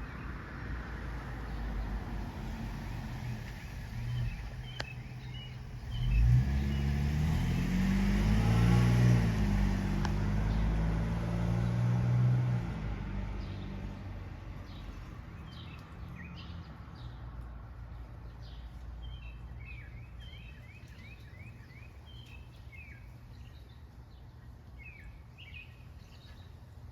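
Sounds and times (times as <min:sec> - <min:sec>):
vehicle engine driving past: 0:00.7 - 0:17.1.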